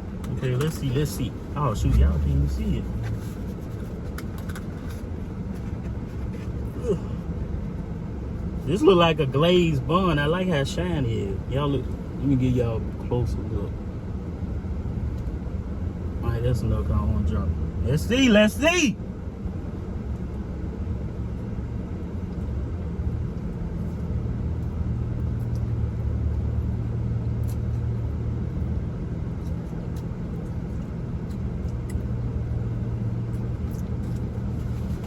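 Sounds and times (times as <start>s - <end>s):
car engine idling: 0.0s - 35.0s.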